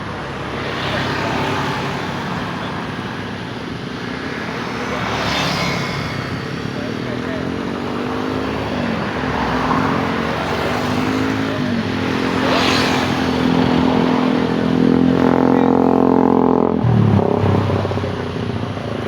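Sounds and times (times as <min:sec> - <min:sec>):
vehicle engines passing: 0:00.0 - 0:19.0
engine speeding up: 0:12.8 - 0:19.0.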